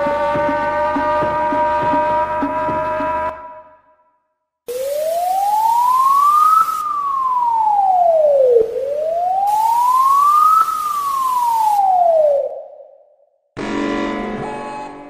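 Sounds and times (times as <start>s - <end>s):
electronic wailing siren: 0.0s - 3.7s, 4.7s - 13.0s
hiss: 4.7s - 7.7s, 8.7s - 12.2s.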